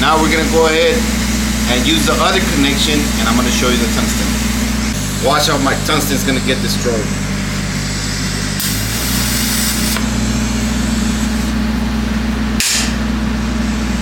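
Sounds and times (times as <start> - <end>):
welding arc humming and hissing: 0.0 - 14.0.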